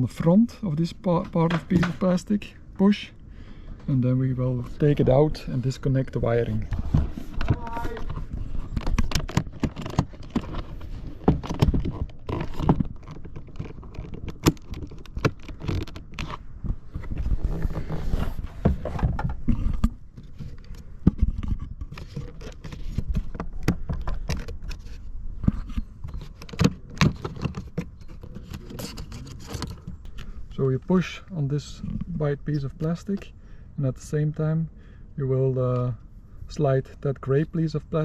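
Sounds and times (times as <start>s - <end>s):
plastic parts clicking and scraping: 4.6s - 31.1s.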